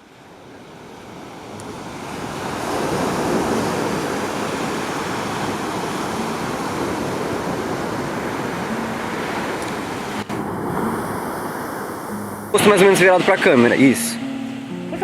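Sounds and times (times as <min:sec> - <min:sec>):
sea surf washing on shore: 0:00.0 - 0:15.0.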